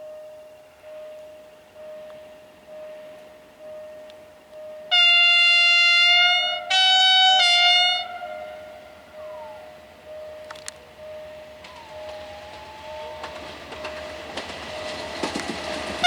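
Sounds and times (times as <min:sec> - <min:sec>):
locomotive horn blasts: 0:04.8 - 0:10.5, 0:11.2 - 0:16.0.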